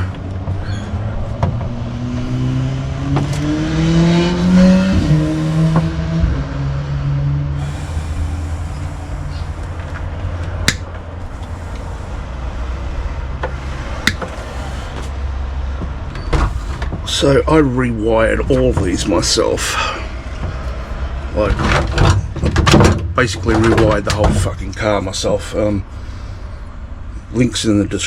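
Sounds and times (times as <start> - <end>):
motor speeding up: 1.7 - 9.8.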